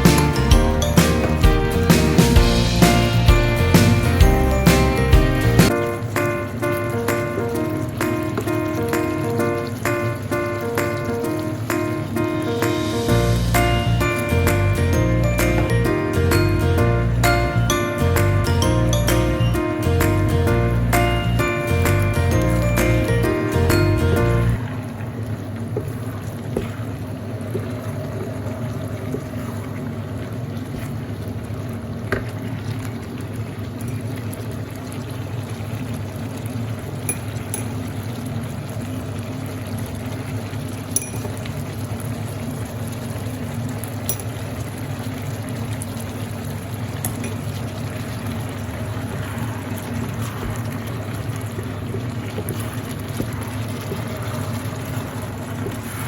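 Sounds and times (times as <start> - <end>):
liquid simmering in a pan: 0.0 - 18.8, 20.0 - 56.0.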